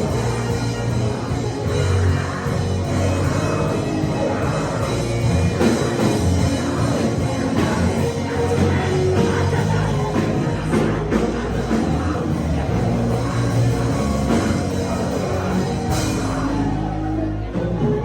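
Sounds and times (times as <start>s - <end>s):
music with drums and low notes: 0.0s - 18.0s.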